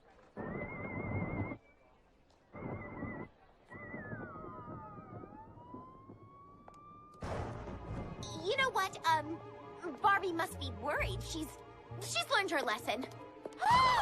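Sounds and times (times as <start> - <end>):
siren-like warbling tones: 0.4 - 1.7, 2.5 - 7.3
sliding tones: 2.5 - 7.2.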